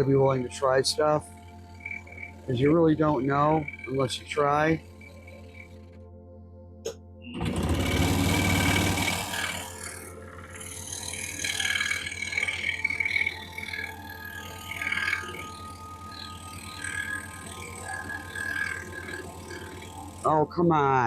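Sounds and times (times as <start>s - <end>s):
scroll saw cutting wood: 7.4s - 20.3s.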